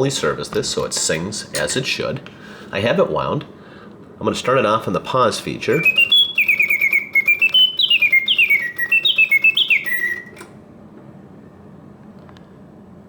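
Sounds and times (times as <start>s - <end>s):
mechanical bird whistle chirping: 5.7s - 10.6s.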